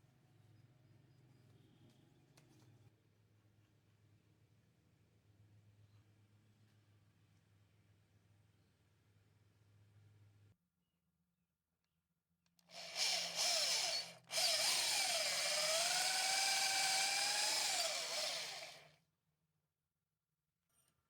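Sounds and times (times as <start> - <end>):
power tool cutting wood: 12.7 - 18.9.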